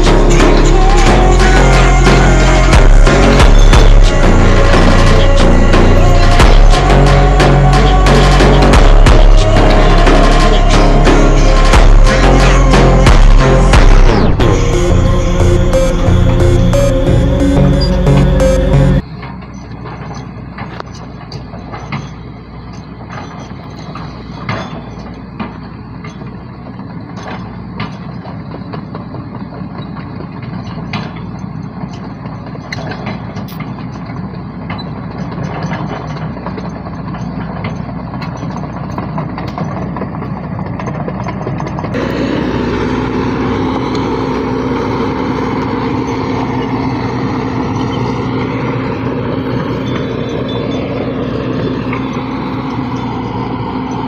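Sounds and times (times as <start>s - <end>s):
excavator diesel engine running: 0.0s - 54.0s
wavering engine whine: 0.0s - 54.0s
metal clanks and knocks: 19.0s - 54.0s.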